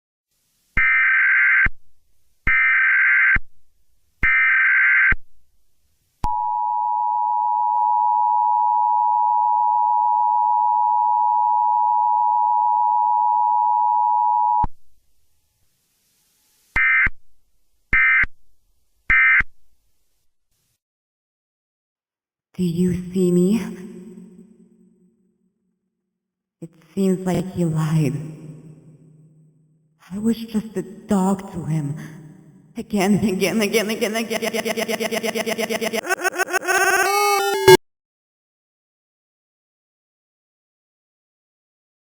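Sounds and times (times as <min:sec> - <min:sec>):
data burst tones: 0:33.5 - 0:37.8
two-tone attention signal: 0:35.9 - 0:37.8.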